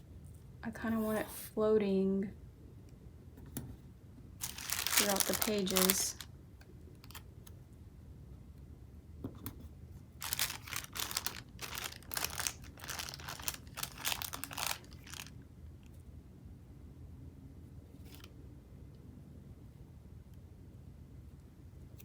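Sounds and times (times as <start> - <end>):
sticker sheet peeling and crinkling: 4.4 - 6.2, 10.2 - 15.3.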